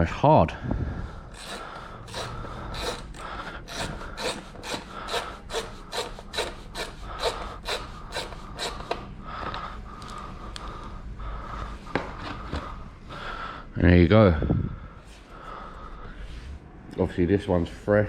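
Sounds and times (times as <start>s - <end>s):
socket ratchet rasping: 1.3s - 9.1s.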